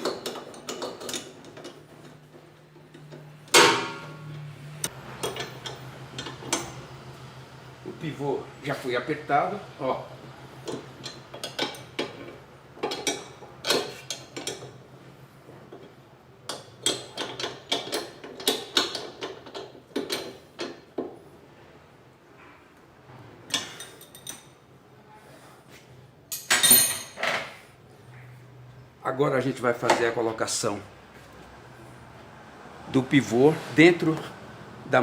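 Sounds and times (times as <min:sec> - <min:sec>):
metal tools clanking: 0:26.3 - 0:27.6.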